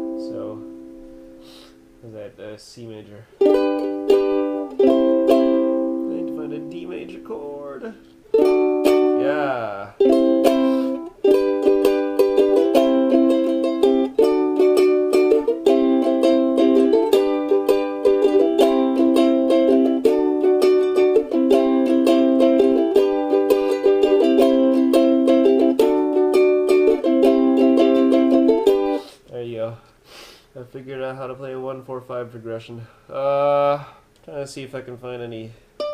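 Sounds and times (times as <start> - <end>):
ukulele strumming chords: 0.0 - 2.0, 3.4 - 29.2.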